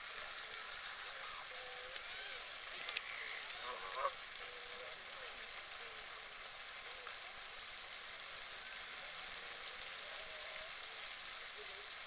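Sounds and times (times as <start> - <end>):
steady hiss: 0.0 - 12.0
geese honking: 3.2 - 4.2.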